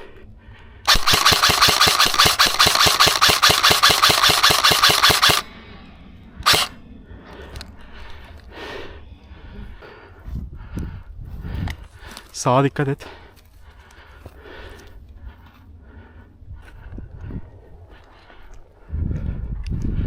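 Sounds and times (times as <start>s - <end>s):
airsoft gun full-auto burst: 0.9s - 5.5s, 6.4s - 6.8s.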